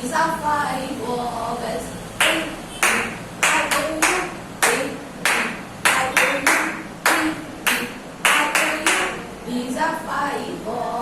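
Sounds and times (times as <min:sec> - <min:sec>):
hand claps: 0:02.2 - 0:09.2.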